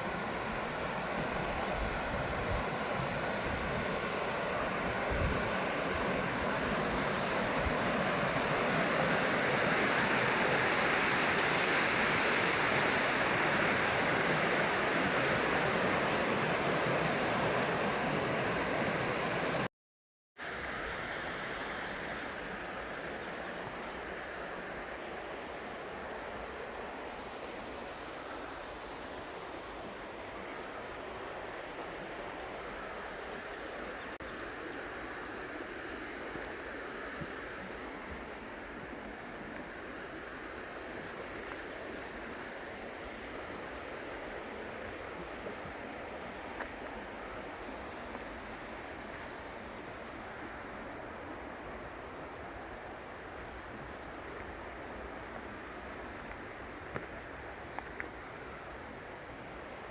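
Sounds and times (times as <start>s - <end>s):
river water rushing over rocks: 0.0s - 19.7s.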